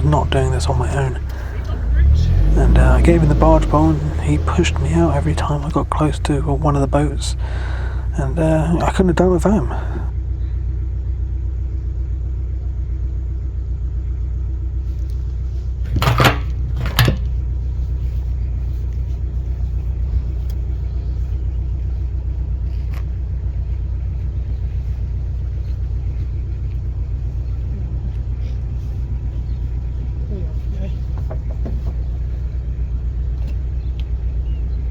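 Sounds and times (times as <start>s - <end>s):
diesel engine running: 0.0s - 34.9s.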